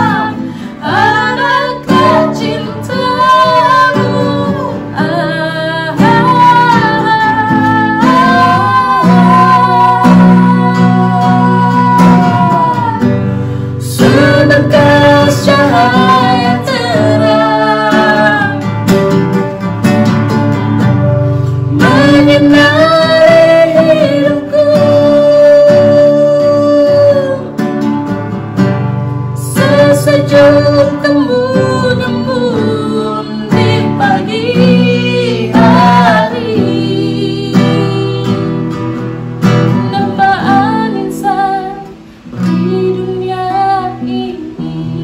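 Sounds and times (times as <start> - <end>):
person singing long notes: 0.0 - 18.9, 21.6 - 27.6, 29.4 - 38.7
plucked guitar chords: 0.0 - 45.0.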